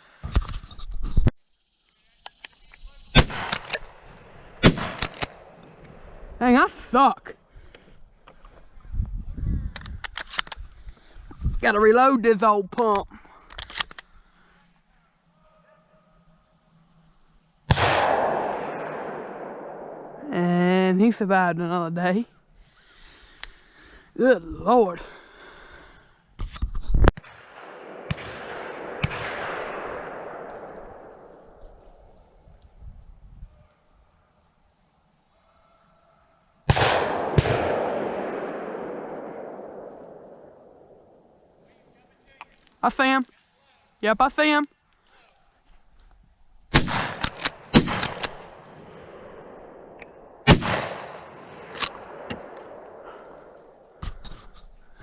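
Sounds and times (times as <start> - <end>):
sharp cracks: 2.2 - 7.1, 17.7 - 20.3, 25.8 - 32.7, 36.6 - 55.0
shotgun shots: 3.1 - 4.0, 4.6 - 5.6, 17.7 - 20.2, 27.2 - 31.5, 36.7 - 40.9, 46.7 - 53.8.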